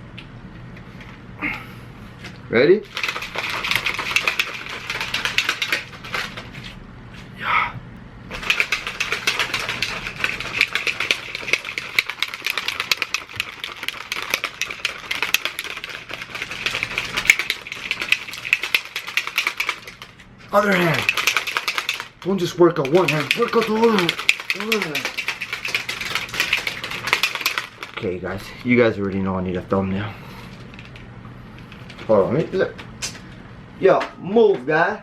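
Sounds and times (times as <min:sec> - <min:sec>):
shaker bottle rattling: 0:02.8 - 0:06.7, 0:08.3 - 0:29.4, 0:30.5 - 0:32.3.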